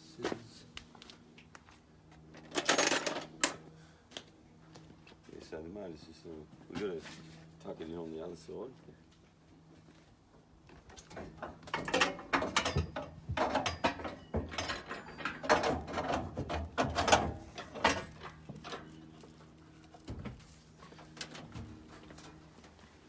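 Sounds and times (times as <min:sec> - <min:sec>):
metallic clanks and rattles: 0:11.0 - 0:19.0.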